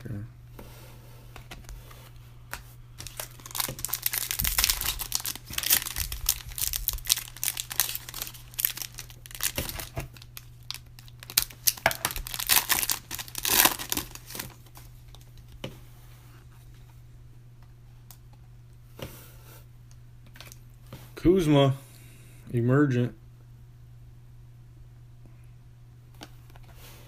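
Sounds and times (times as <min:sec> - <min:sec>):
foil wrapper tearing and crinkling: 0:03.0 - 0:14.8.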